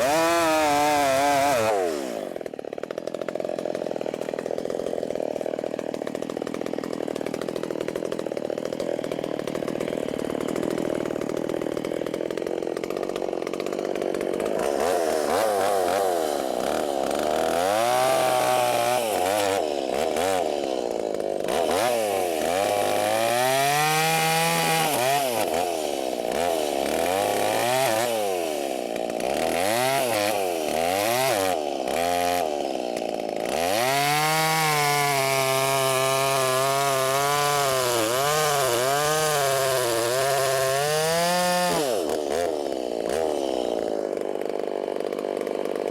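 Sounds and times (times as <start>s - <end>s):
chainsaw revving: 0.0s - 45.9s.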